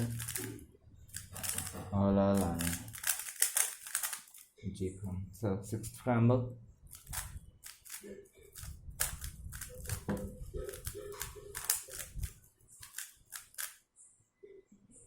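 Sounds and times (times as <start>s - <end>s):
puzzle cube plastic clicks: 0.0s - 1.8s, 2.4s - 4.5s, 6.9s - 13.8s.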